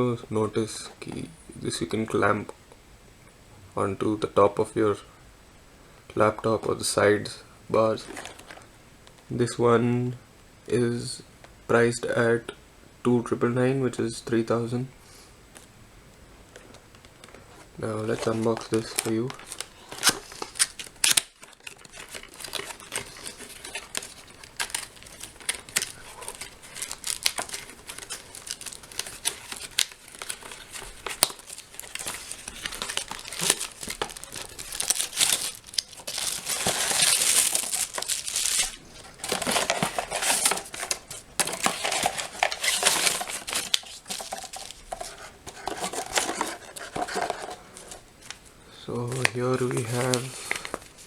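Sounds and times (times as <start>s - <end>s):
wrapping crinkling and rustling: 7.8s - 9.3s, 16.5s - 51.0s.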